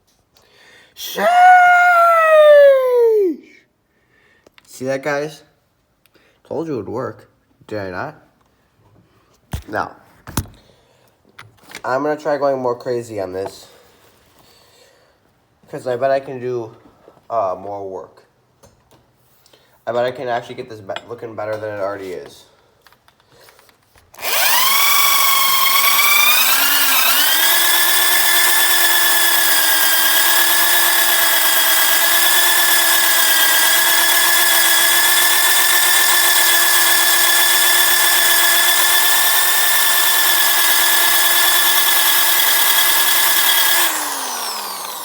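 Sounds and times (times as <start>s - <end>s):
electric polisher motor whining: 24.2s - 45.0s.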